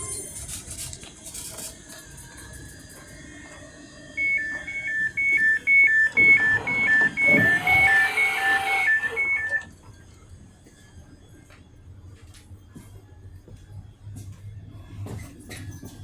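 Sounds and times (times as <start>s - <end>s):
alternating high and low beeping: 4.2s - 9.7s.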